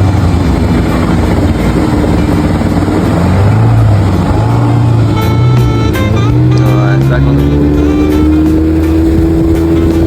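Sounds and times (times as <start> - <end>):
wind noise: 0.0 - 6.5
outboard motor humming: 0.0 - 10.0
rushing water: 0.0 - 10.0.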